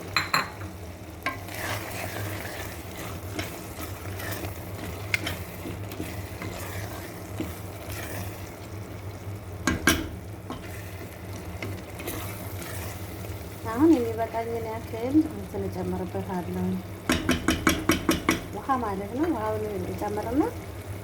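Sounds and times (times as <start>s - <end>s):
light sizzling: 0.0s - 21.0s
spoon knocking on pot: 0.1s - 0.7s, 9.6s - 10.2s, 17.1s - 18.6s
spoon scraping in cooking pot: 1.2s - 8.6s, 9.7s - 13.2s.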